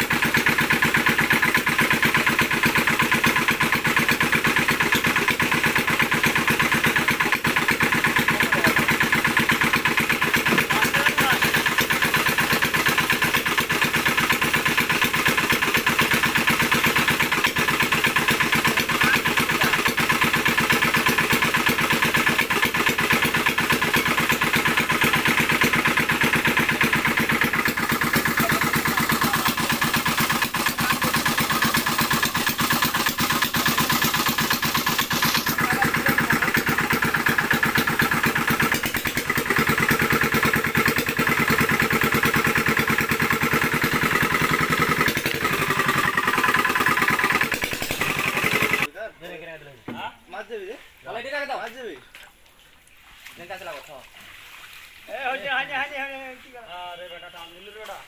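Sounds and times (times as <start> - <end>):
small engine running: 0.0 - 48.9.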